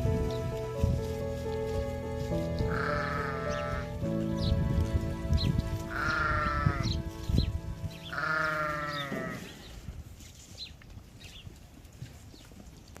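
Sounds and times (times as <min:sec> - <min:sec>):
sheep bleating: 0:02.7 - 0:03.9, 0:05.9 - 0:06.9, 0:08.1 - 0:09.6.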